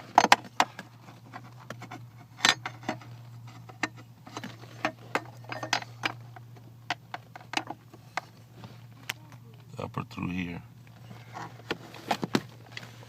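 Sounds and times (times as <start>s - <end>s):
metal parts clicking and knocking: 0.0s - 7.8s.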